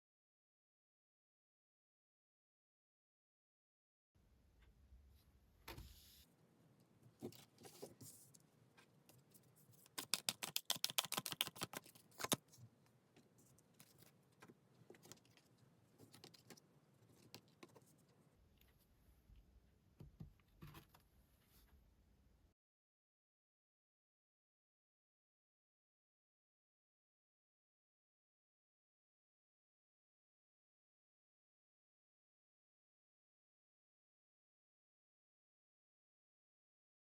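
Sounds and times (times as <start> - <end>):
cards being shuffled: 9.4 - 12.6
sharp card clicks: 9.9 - 12.4.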